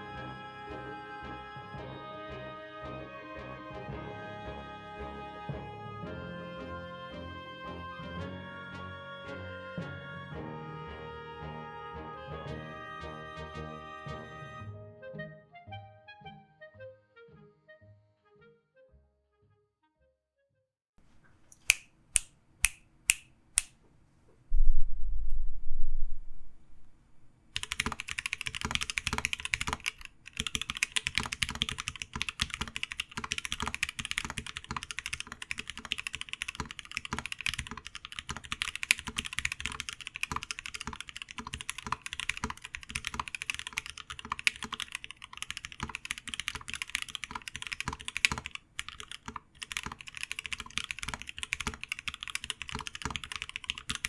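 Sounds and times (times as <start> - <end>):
loud low rumble: 24.6 - 27.1
mechanical keyboard typing: 27.6 - 54.0.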